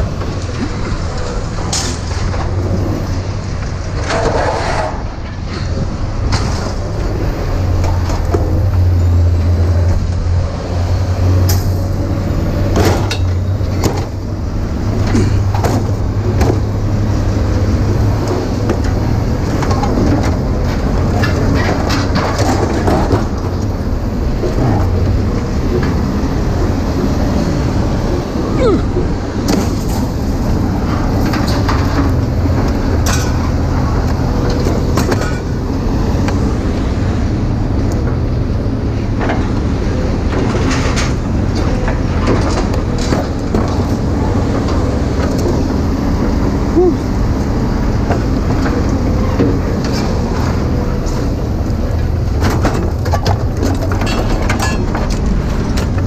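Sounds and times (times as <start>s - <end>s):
vehicle road rumble: 0.0s - 56.0s
rattles and clicks: 11.3s - 27.8s, 29.0s - 36.7s, 37.7s - 56.0s
clicks and rattles: 51.9s - 56.0s.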